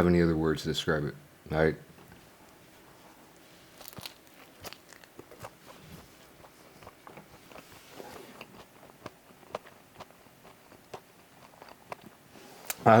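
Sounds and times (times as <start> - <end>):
person chewing food: 3.7 - 12.8.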